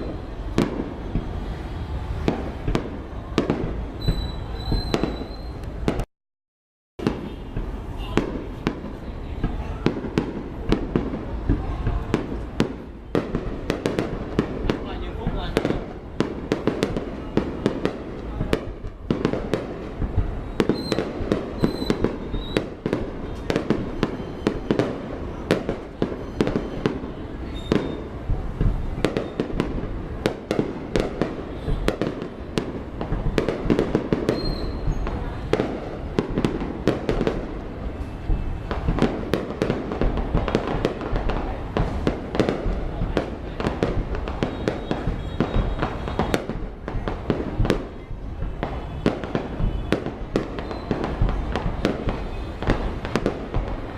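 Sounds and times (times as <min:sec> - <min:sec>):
firework whistles: 0:00.0 - 0:06.0, 0:20.2 - 0:29.9, 0:30.9 - 0:36.6, 0:37.3 - 0:41.0, 0:44.3 - 0:47.1, 0:47.8 - 0:53.2
fireworks bangs and crackles: 0:00.0 - 0:06.1, 0:07.0 - 0:53.9.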